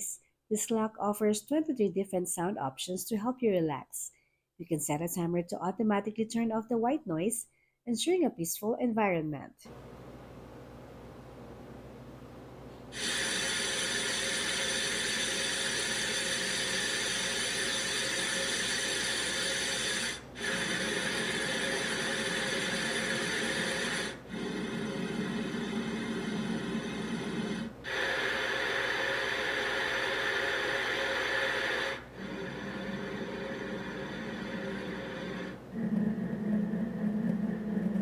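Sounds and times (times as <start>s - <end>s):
white noise from clock speaker: 9.7s - 38.0s.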